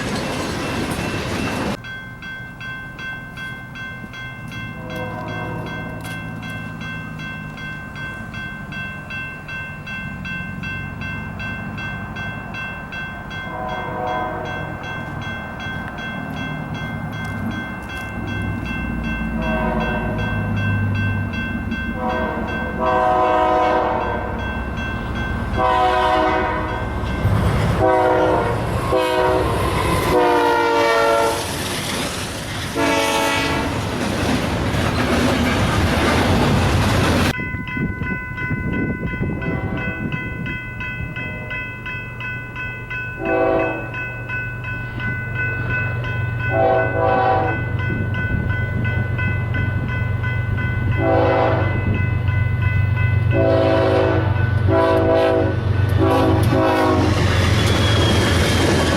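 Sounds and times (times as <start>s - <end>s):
wheels on rails: 0.0s - 13.5s, 31.4s - 32.8s, 33.5s - 51.0s, 55.6s - 58.9s
train rumble: 0.0s - 58.9s
locomotive air horn blasts: 4.8s - 6.0s, 13.5s - 14.7s, 19.4s - 20.2s, 21.9s - 24.4s, 25.5s - 26.9s, 27.7s - 31.6s, 32.8s - 33.8s, 39.4s - 40.2s, 43.2s - 43.9s, 46.5s - 47.6s, 51.0s - 51.8s, 53.3s - 57.3s.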